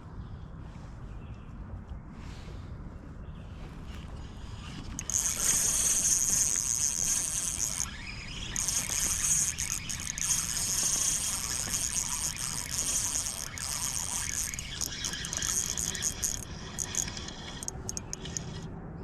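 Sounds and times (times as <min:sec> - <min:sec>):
high-pitched insect buzzing: 0:04.9 - 0:18.6.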